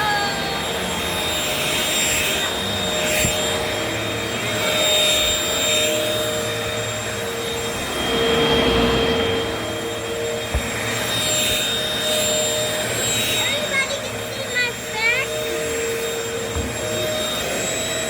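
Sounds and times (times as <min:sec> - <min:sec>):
motor whines: 0:00.0 - 0:18.0
vacuum cleaners running: 0:00.0 - 0:18.0.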